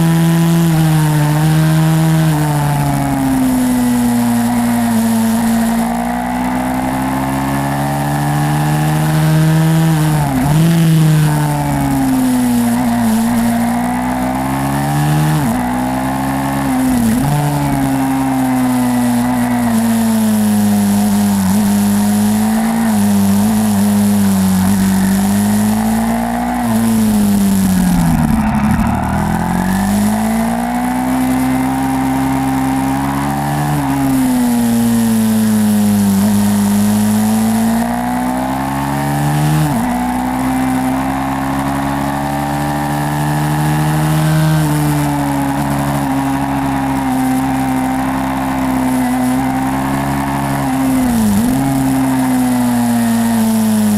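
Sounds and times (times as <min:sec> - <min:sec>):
motorbike engine revving: 0:00.0 - 0:53.9.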